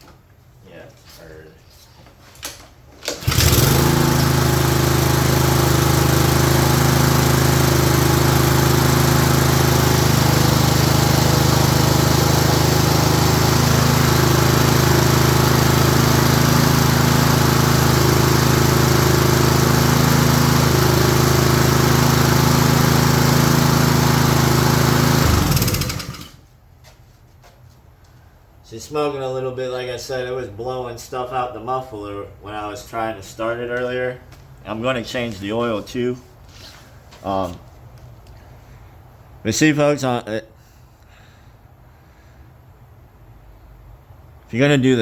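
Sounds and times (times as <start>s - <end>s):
lawn mower engine running: 3.0s - 26.5s.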